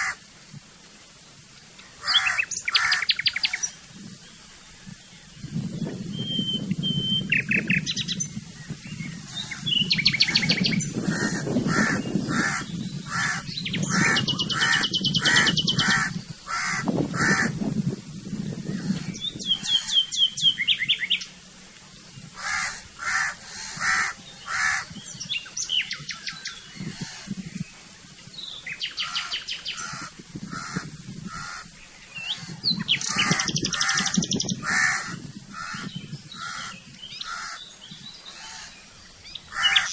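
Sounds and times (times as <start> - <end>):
evenly repeated bird calls: 0.0 - 0.2, 1.8 - 3.8, 6.2 - 8.4, 9.0 - 17.6, 18.6 - 21.4, 22.2 - 27.8, 28.4 - 39.9
high bird trills: 2.0 - 3.8, 9.3 - 17.6, 18.7 - 21.3, 28.6 - 39.9.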